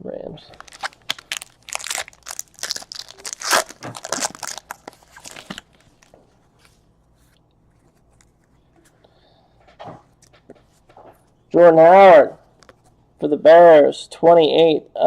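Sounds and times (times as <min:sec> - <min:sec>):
plastic wrapping tearing and crinkling: 0:00.5 - 0:06.2.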